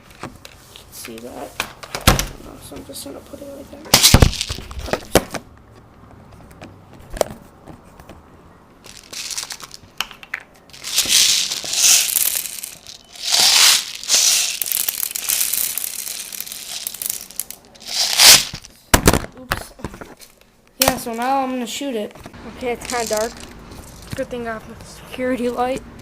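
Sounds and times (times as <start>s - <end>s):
rustling crinkling handling noise: 3.9s - 5.2s, 8.8s - 18.8s, 22.2s - 24.4s.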